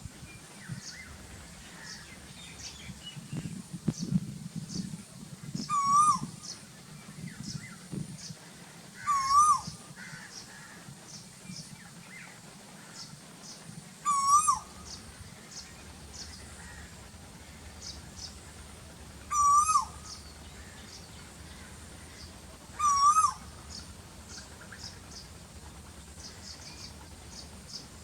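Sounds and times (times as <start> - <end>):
koel whistled calls: 5.7 - 6.3, 9.0 - 9.7, 14.1 - 15.1, 19.3 - 21.0, 22.1 - 25.2.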